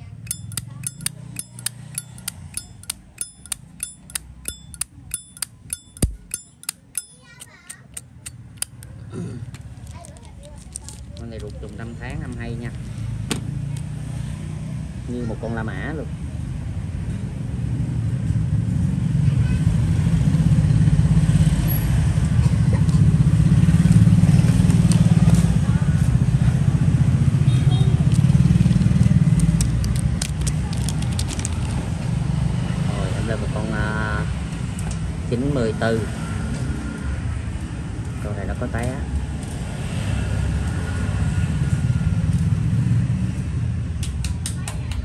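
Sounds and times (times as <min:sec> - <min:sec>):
vehicle engine rumbling: 0:00.0 - 0:14.2, 0:27.9 - 0:32.6
lighter lid clicking open and shut: 0:00.3 - 0:07.2.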